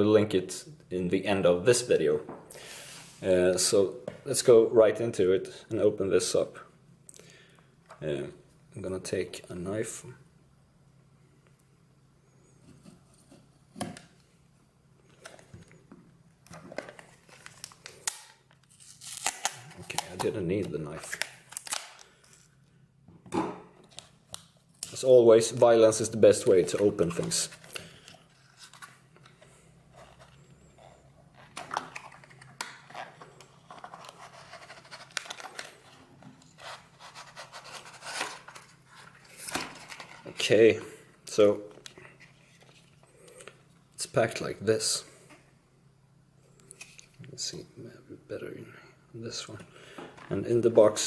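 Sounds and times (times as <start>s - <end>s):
cardboard packaging torn and rustling: 16.9s - 20.4s, 21.0s - 22.5s, 31.5s - 40.3s.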